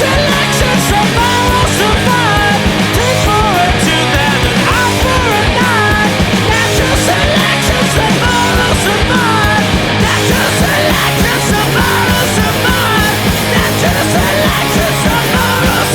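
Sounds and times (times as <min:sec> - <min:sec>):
instrumental punk rock music: 0:00.0 - 0:15.9.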